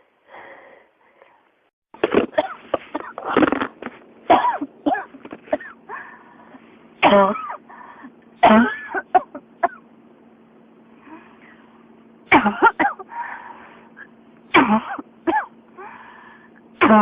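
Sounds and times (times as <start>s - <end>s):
person coughing harshly: 2.1s - 3.7s, 4.3s - 5.9s, 7.0s - 7.7s, 8.4s - 9.8s, 12.3s - 13.1s, 14.5s - 15.5s, 16.8s - 17.0s.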